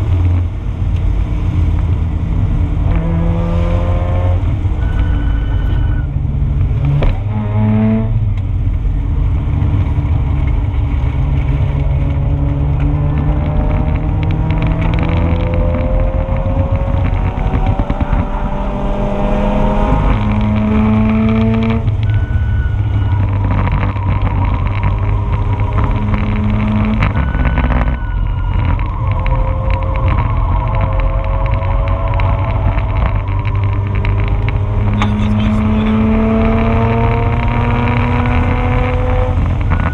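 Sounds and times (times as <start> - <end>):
rotary engine revving hard: 12.6 - 39.9.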